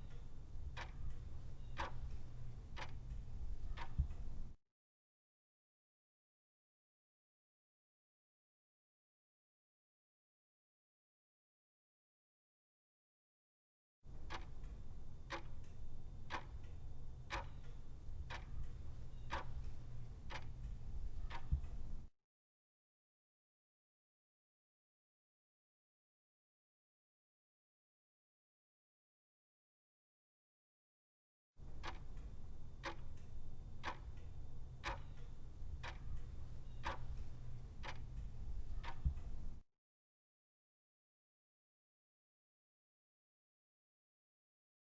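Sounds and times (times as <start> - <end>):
clock ticking: 0.0 - 4.6, 14.1 - 22.1, 31.6 - 39.6
low steady hum: 0.0 - 4.6, 14.1 - 22.1, 31.6 - 39.6.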